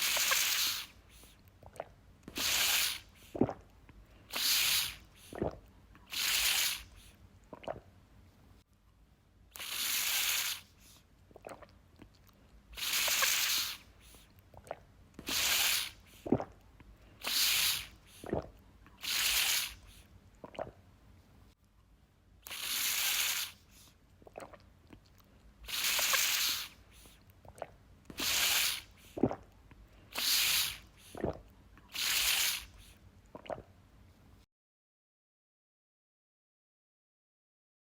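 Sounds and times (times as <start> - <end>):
drinking through bottle spout: 0.0 - 7.9, 9.5 - 12.2, 12.8 - 20.8, 22.4 - 33.8
wet mouth clicks: 0.0 - 7.9, 11.3 - 20.8, 22.4 - 33.7.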